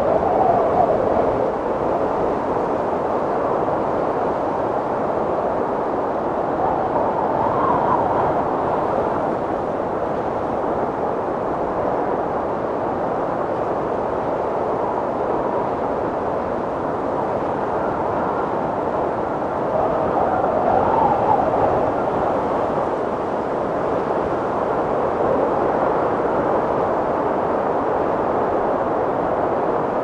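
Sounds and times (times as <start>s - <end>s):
blizzard wind blowing hard: 0.0s - 30.0s.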